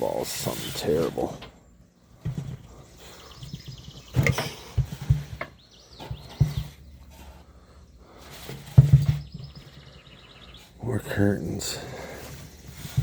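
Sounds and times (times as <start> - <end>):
low thumps and knocks: 2.2 - 7.0, 8.6 - 9.8.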